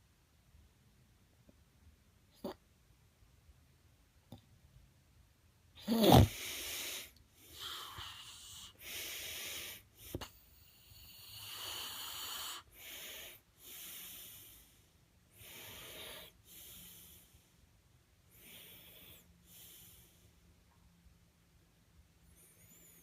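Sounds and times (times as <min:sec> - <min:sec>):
person snoring: 0:05.8 - 0:08.7.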